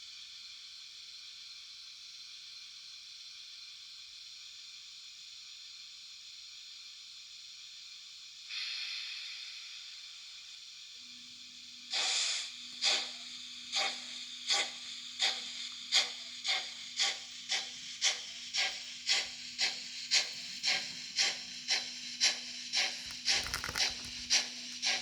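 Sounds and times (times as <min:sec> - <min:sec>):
soft steam hiss: 0:08.4 - 0:10.8.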